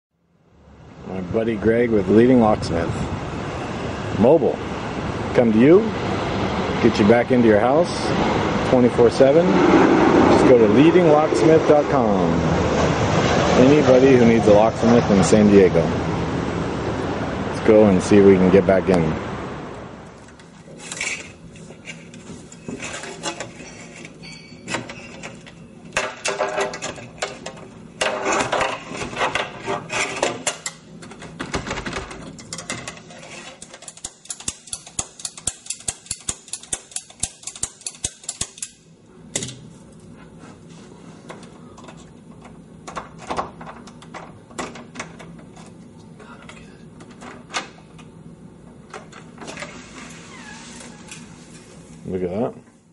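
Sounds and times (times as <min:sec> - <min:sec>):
lock picking clicks and scrapes: 0:32.4 - 0:38.8.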